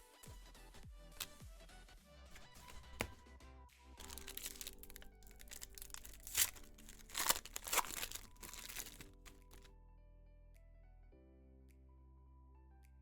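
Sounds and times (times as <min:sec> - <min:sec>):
foil wrappers crinkling and tearing: 0:01.2 - 0:01.4, 0:02.3 - 0:03.2, 0:04.0 - 0:09.7
quiet background music: 0:02.3 - 0:03.4, 0:04.0 - 0:13.0.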